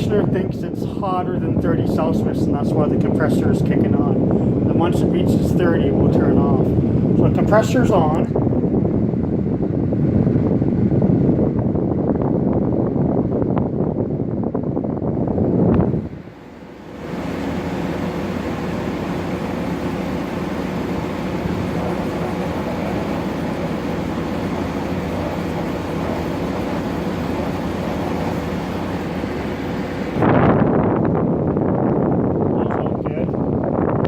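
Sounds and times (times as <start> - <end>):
air conditioner fan rushing: 0.0 - 34.0
low compressor hum: 0.0 - 34.0.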